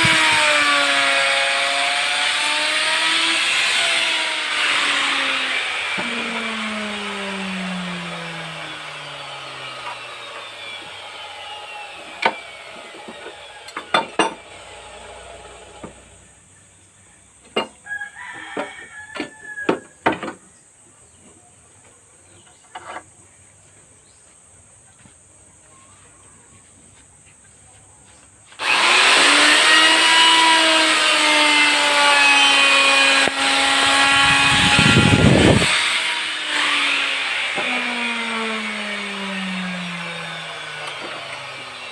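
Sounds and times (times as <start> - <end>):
electric router whine: 0.0 - 16.2, 28.5 - 41.9.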